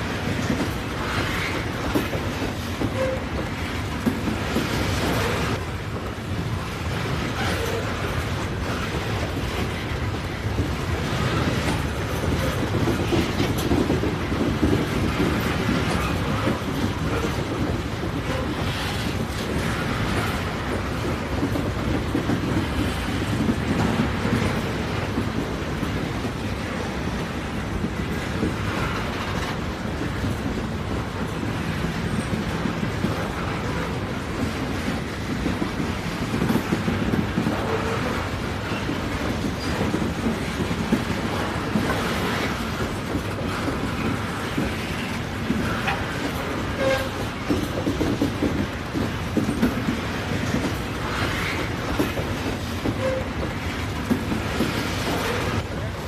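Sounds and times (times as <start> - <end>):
train wheels rumbling on rail: 0.0 - 56.0.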